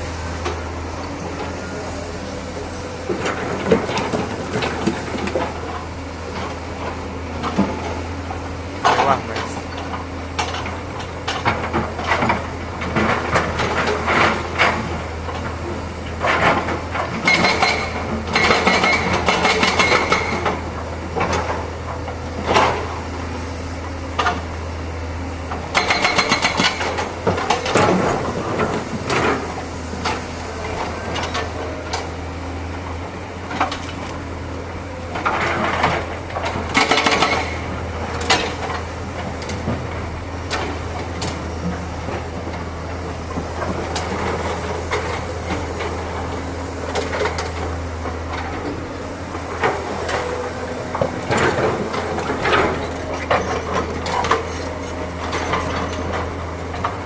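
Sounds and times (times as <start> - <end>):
diesel engine running: 0.0 - 57.0.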